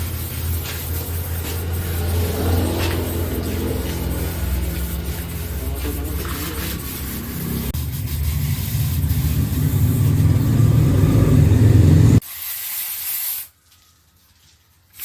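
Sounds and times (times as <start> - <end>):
loud low rumble: 1.8 - 12.2.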